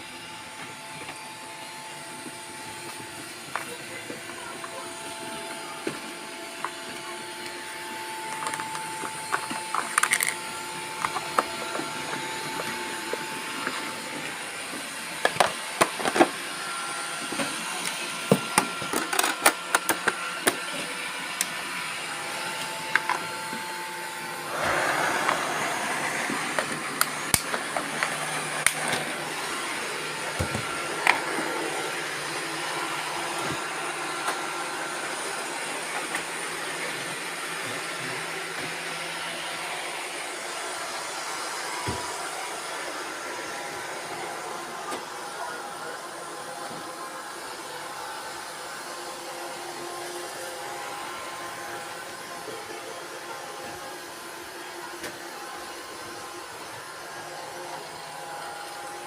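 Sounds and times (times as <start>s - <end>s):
robot vacuum motor whirring: 0.5s - 45.3s.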